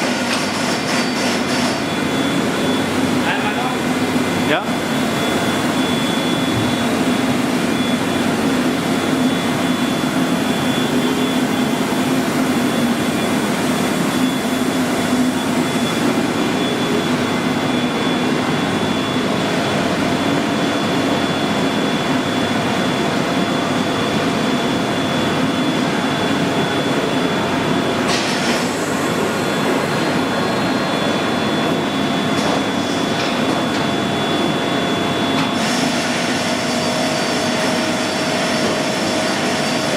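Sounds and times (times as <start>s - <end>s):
milling machine humming and whining: 0.0s - 39.9s.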